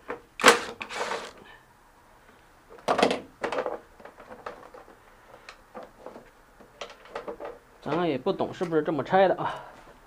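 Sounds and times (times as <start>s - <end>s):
tools and parts clattering: 0.4s - 1.4s.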